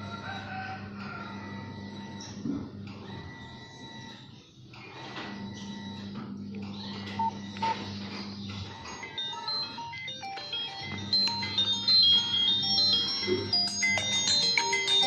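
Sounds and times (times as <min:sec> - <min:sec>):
phone ringtone chiming melody: 0:08.8 - 0:15.0.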